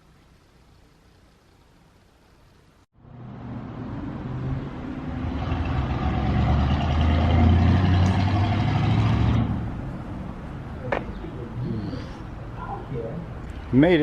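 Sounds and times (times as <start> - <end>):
vehicle engine humming: 3.0 - 14.0.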